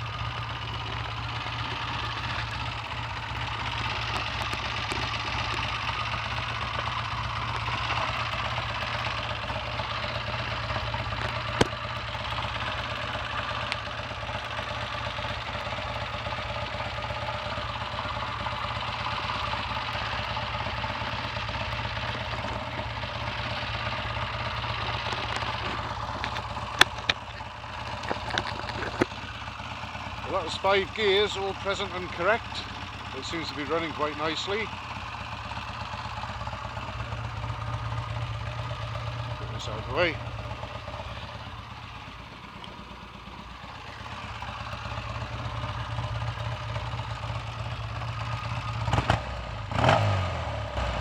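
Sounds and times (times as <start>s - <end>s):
motorcycle engine running: 0.0s - 51.0s
sharp clicks: 0.4s - 16.2s, 18.3s - 34.7s.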